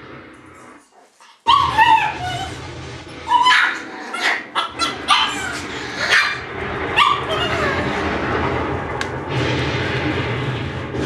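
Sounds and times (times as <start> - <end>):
puppies yipping and whimpering: 1.2 - 2.6, 3.2 - 7.9.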